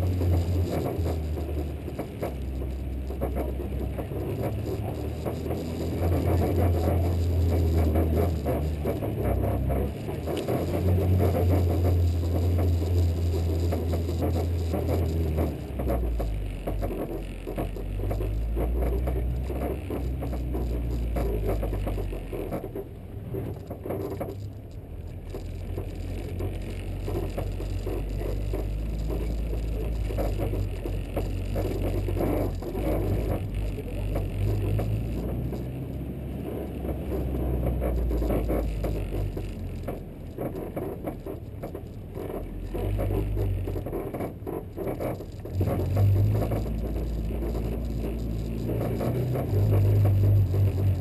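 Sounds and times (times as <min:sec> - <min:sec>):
car engine rumble: 0:00.0 - 0:51.0
road noise: 0:00.0 - 0:51.0.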